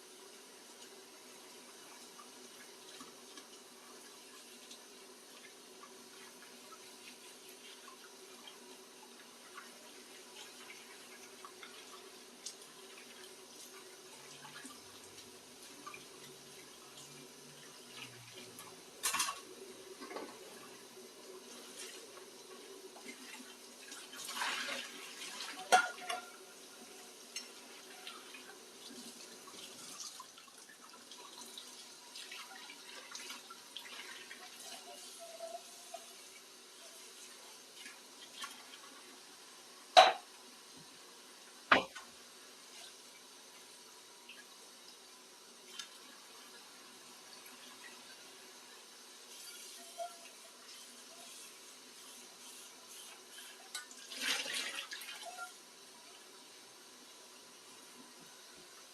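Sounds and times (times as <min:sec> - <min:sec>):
dishes knocking and clinking: 0:25.6 - 0:26.3, 0:40.0 - 0:40.3, 0:41.7 - 0:42.0.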